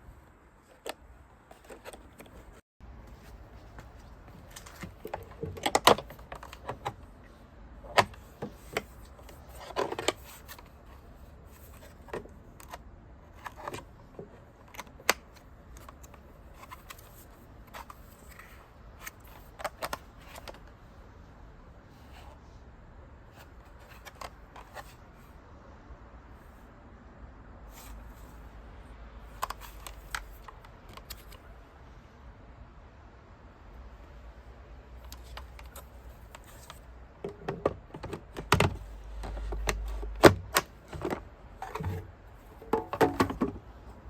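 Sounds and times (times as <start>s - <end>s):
plastic clicks and knocks: 35.1s - 43.7s.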